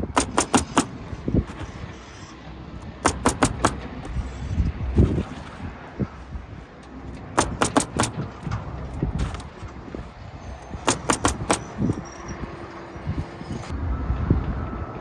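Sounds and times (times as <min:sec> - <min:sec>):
nail gun firing: 0:00.0 - 0:01.8, 0:02.8 - 0:04.2, 0:07.2 - 0:09.5, 0:10.9 - 0:12.0
handling noise: 0:00.0 - 0:13.7.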